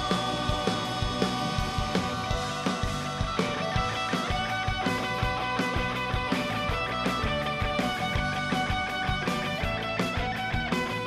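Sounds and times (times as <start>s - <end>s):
electric guitar: 0.0s - 11.0s
steady drum beat: 0.0s - 11.0s.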